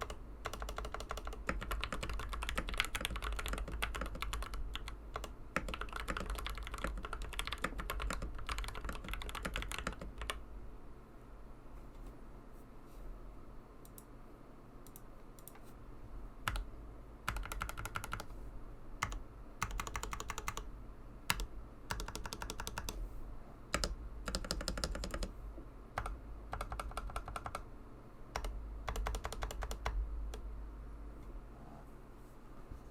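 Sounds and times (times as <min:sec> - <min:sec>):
mechanical keyboard typing: 0:00.0 - 0:10.4, 0:16.4 - 0:18.3, 0:19.0 - 0:20.7, 0:21.3 - 0:23.0, 0:23.7 - 0:25.3, 0:26.0 - 0:27.7, 0:28.4 - 0:30.4.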